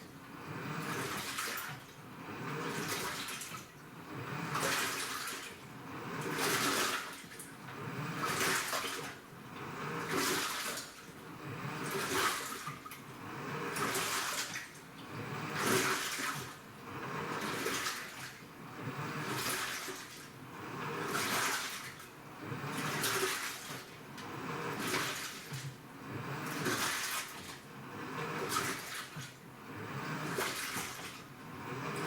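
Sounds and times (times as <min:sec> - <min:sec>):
water sloshing in washing machine: 0:00.0 - 0:32.0.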